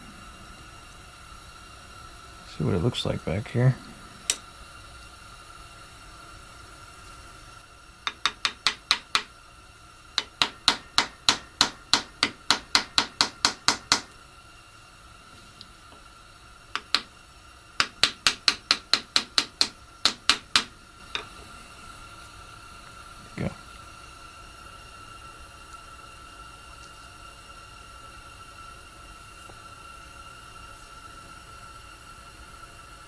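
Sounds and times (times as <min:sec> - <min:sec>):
ratchet tool clicking: 0:08.1 - 0:09.3, 0:10.2 - 0:14.1, 0:17.8 - 0:21.3.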